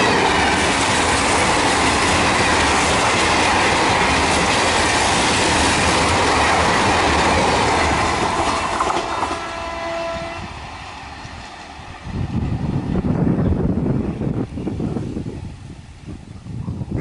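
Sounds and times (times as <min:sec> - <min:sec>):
train rushing past: 0:00.0 - 0:16.2
train horn: 0:08.5 - 0:10.6
wind buffeting microphone: 0:10.1 - 0:17.0.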